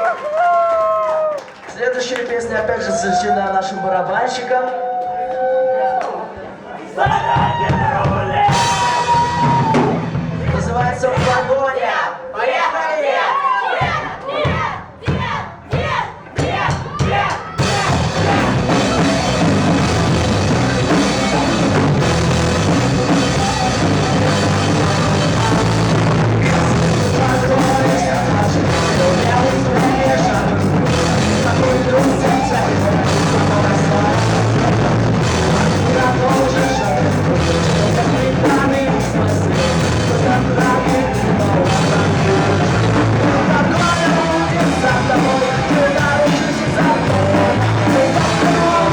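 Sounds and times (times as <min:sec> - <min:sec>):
live rock band: 0:07.4 - 0:11.6, 0:17.5 - 0:48.9.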